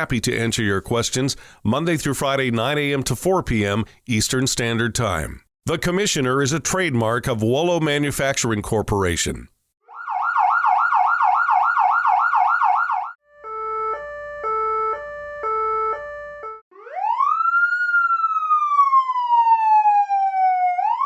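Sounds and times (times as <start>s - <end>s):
electronic siren cycling tones: 9.8s - 21.0s.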